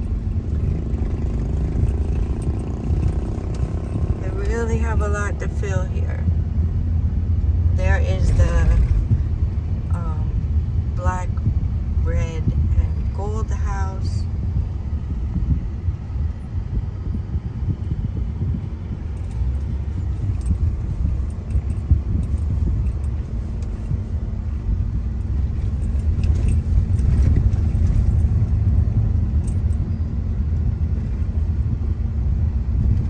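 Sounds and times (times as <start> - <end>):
light rattles and clicks: 0.0 - 6.0, 17.7 - 31.5
car interior rumble: 0.0 - 33.0.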